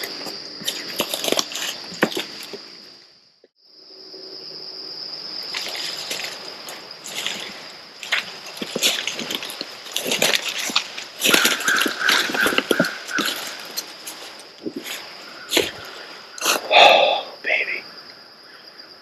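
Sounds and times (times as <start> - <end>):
insects trilling: 0.0 - 19.0
footsteps through dry leaves: 5.4 - 16.2.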